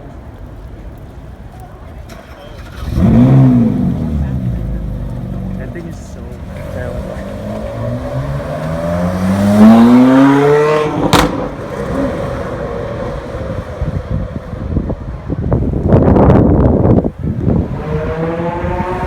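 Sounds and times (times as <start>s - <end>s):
exhaust pops: 2.0s - 12.5s
sports car engine accelerating: 2.6s - 19.0s
sharp exhaust crack: 9.2s - 12.0s.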